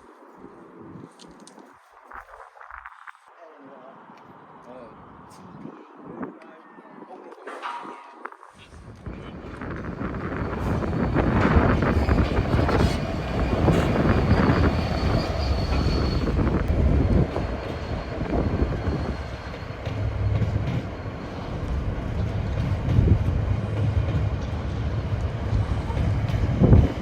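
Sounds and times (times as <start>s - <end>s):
train rumbling past: 8.6s - 27.0s
high wheel squeal: 9.9s - 19.8s.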